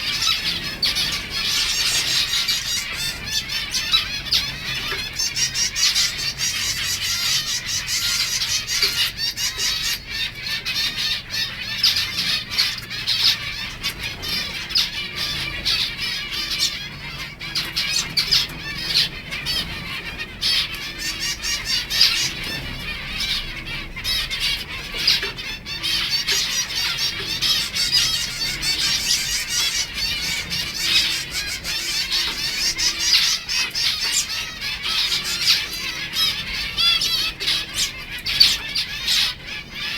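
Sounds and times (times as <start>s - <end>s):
wings flapping: 0.0s - 5.1s
finches chattering: 0.0s - 39.9s.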